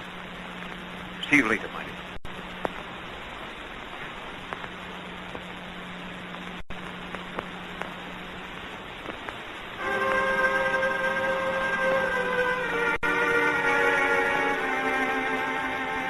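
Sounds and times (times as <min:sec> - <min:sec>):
faint crackles and clicks: 0:00.0 - 0:13.1
film soundtrack hiss: 0:00.0 - 0:16.0
low hum: 0:00.0 - 0:16.0
music with held notes: 0:09.8 - 0:16.0.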